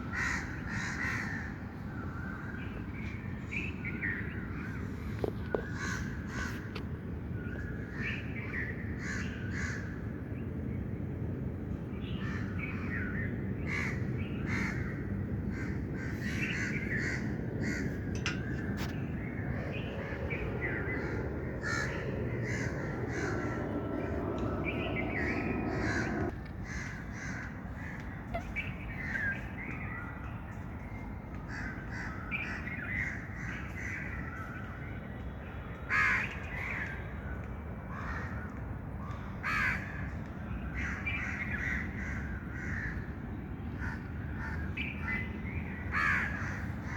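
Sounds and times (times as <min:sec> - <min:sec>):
birds calling: 0:15.5 - 0:27.0.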